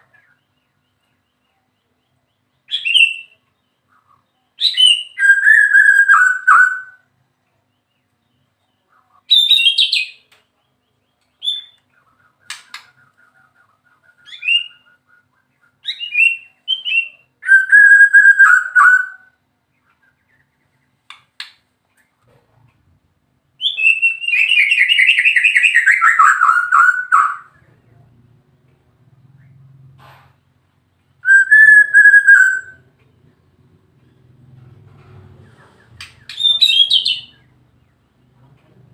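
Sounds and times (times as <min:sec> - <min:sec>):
bird singing whistled phrases: 0:02.7 - 0:07.0, 0:14.0 - 0:19.4, 0:23.6 - 0:27.6, 0:31.2 - 0:32.8, 0:36.2 - 0:37.4.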